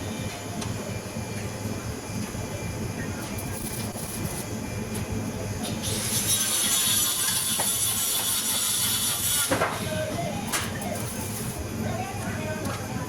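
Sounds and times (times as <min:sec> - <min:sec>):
welding hiss: 0:03.2 - 0:04.5, 0:05.6 - 0:11.6.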